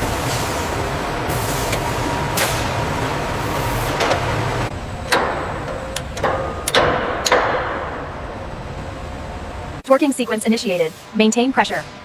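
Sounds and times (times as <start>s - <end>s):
low machinery rumble: 0.0s - 9.8s
metallic clanks and knocks: 5.0s - 8.0s.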